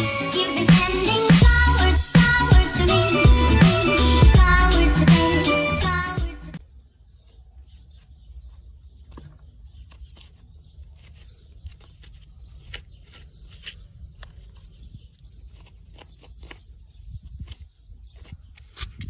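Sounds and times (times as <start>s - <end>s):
horse grooming scratching: 9.9s - 16.6s.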